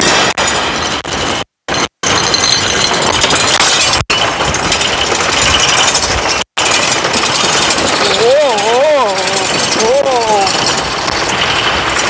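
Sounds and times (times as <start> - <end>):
washing machine rattling and banging: 0.0 - 12.0.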